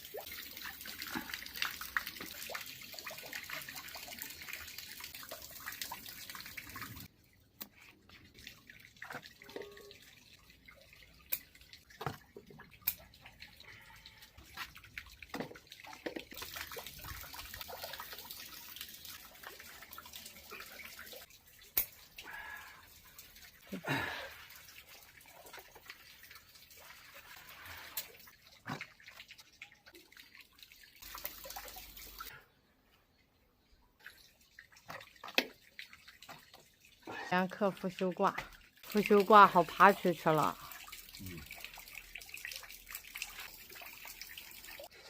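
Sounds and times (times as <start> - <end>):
rain falling on plants: 23.6 - 24.4, 37.4 - 43.4.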